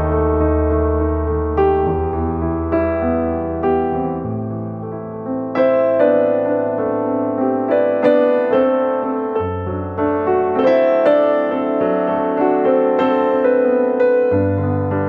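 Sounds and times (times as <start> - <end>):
low bass: 0.0 - 4.6
gentle piano music: 0.0 - 15.0.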